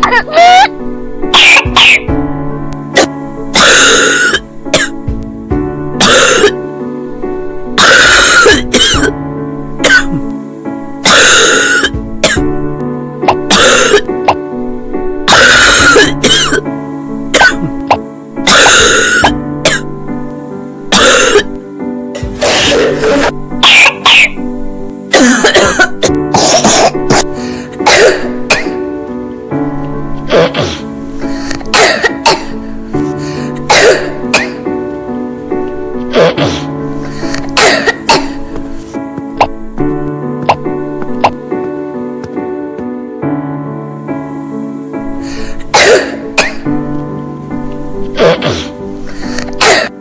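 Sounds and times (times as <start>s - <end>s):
child coughing: 0.0s - 0.7s, 1.4s - 2.1s, 3.0s - 5.0s, 6.0s - 6.6s, 7.8s - 9.2s, 9.8s - 10.2s, 11.0s - 12.4s, 13.2s - 14.4s, 15.3s - 16.6s, 17.3s - 19.9s, 20.9s - 21.5s, 22.2s - 24.4s, 25.1s - 28.8s, 30.3s - 30.8s, 31.6s - 32.6s, 33.4s - 34.6s, 36.1s - 39.6s, 45.7s - 46.7s, 48.2s - 48.7s, 49.4s - 50.0s
background music: 0.0s - 50.0s.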